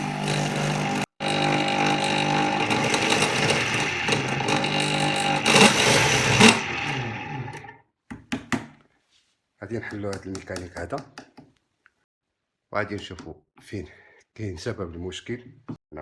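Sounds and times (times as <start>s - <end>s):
stand mixer motor with rough noise: 0.0s - 7.7s.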